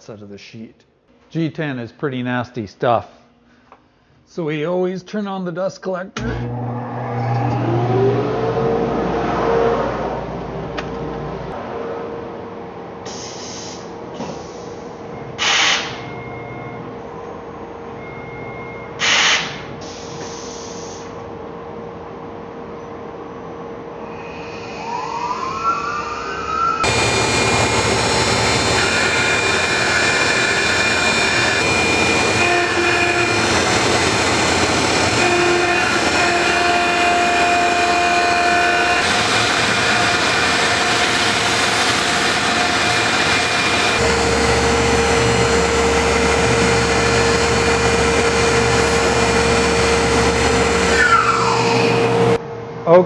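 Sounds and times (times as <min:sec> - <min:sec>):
end mill cutting fiberglass: 0:06.2 - 0:10.9, 0:26.8 - 0:52.4
spindle whine: 0:06.2 - 0:12.7, 0:23.3 - 0:52.4
dust collector rushing: 0:26.8 - 0:52.4.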